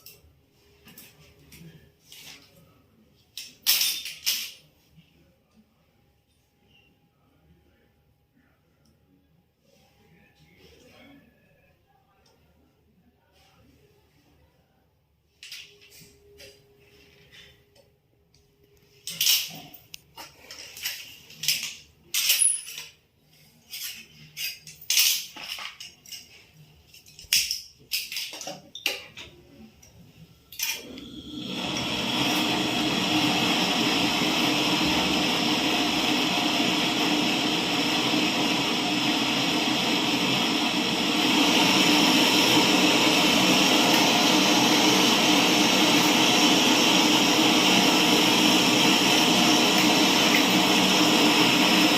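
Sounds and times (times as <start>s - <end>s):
loud rushing hum of machine: 30.8s - 51.9s.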